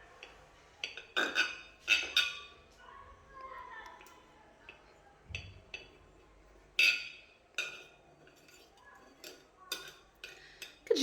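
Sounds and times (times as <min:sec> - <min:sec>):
metal utensil clinking on plate: 0:00.2 - 0:02.6, 0:06.8 - 0:11.0.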